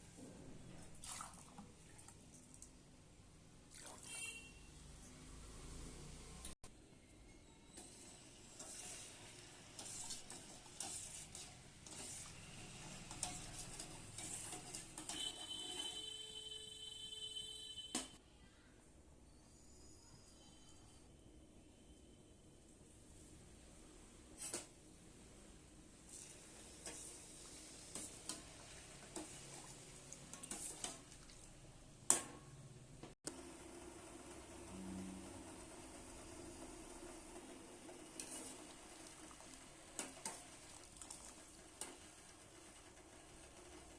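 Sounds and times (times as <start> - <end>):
spoon scraping in a pot: 7.6 - 16.2, 26.1 - 31.1, 38.1 - 38.8.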